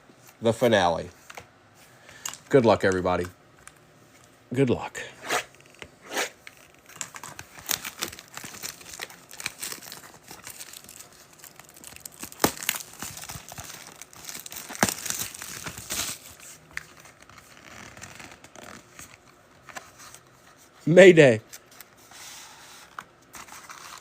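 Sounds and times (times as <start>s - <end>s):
plastic wrapping crinkling and tearing: 6.4s - 19.2s, 23.3s - 24.0s.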